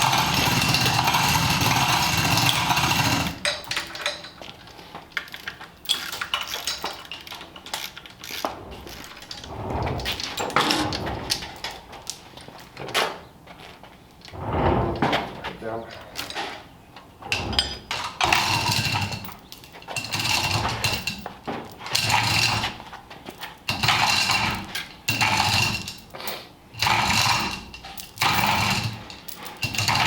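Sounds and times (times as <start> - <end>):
hoist clanking and ratcheting: 0.0 - 4.6, 5.3 - 11.8, 17.3 - 22.8, 23.6 - 26.1, 26.8 - 30.0.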